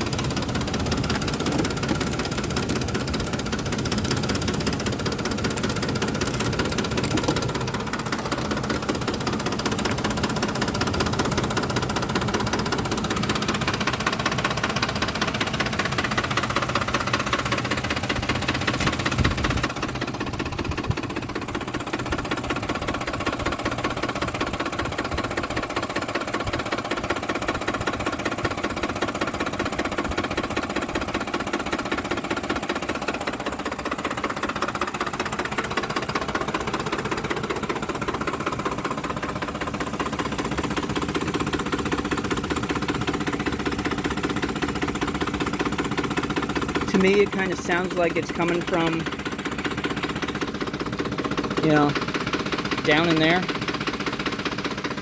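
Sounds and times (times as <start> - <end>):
engine idling roughly: 0.0 - 55.0
fast knocking rattle: 0.0 - 55.0.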